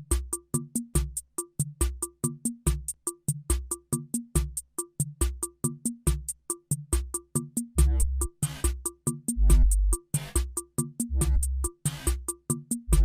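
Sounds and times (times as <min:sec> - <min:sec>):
electronic drum-machine music: 0:00.0 - 0:13.0.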